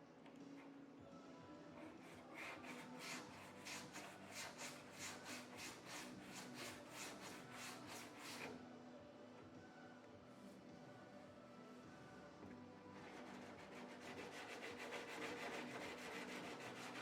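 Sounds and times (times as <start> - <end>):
sandpaper rubbing on car panel: 2.0 - 8.5, 13.0 - 17.0.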